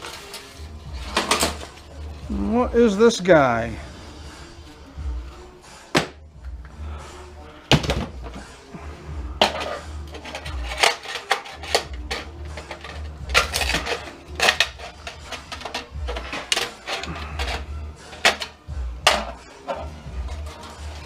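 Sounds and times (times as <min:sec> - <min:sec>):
metal parts clanking: 0:00.0 - 0:02.0, 0:09.4 - 0:21.0.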